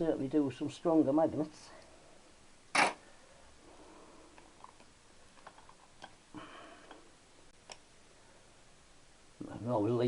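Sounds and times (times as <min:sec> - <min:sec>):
small clicks and taps: 0:07.6 - 0:07.9.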